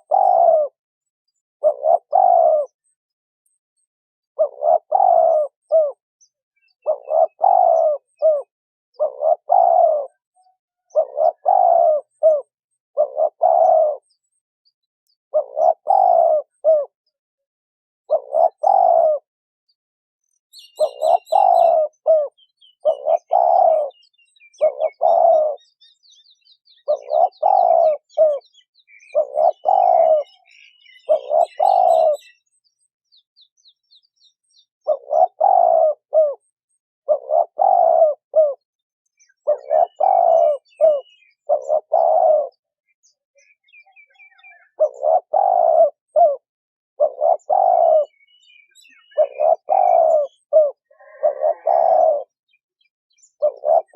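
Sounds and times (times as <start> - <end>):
doves cooing: 0.0 - 0.8, 1.6 - 3.0, 4.4 - 6.0, 6.7 - 14.2, 15.3 - 17.0, 18.0 - 19.3, 20.6 - 25.8, 26.7 - 32.5, 34.8 - 42.7, 43.9 - 52.6, 53.2 - 53.9
small birds twittering: 0.0 - 17.2, 18.0 - 19.3, 20.2 - 53.9.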